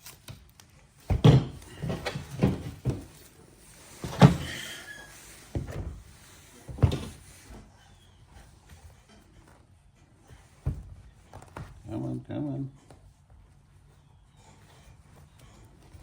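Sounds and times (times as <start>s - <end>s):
knocks and thumps on motorcycle seat: 1.1s - 3.1s, 6.7s - 7.3s, 10.6s - 11.8s.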